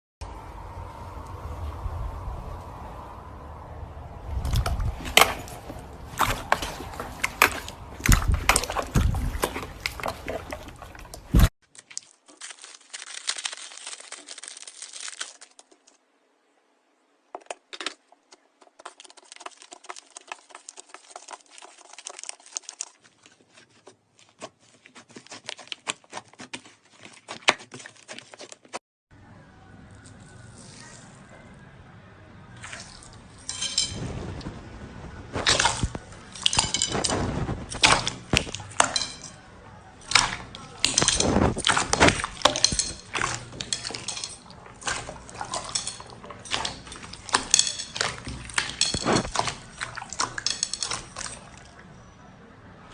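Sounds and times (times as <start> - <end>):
slime crackling and popping: 11.0 - 15.9, 18.8 - 23.6.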